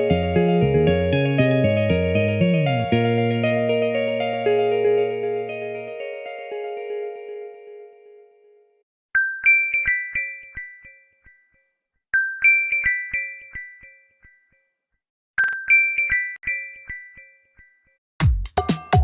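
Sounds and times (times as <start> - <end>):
phone ringtone chime notes: 9.2 - 11.2, 12.2 - 14.1, 15.4 - 17.9.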